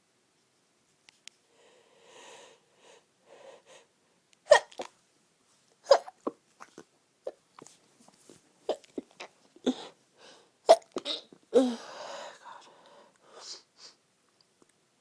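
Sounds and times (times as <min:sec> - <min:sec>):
stifled sneezes: 0:04.5 - 0:04.9.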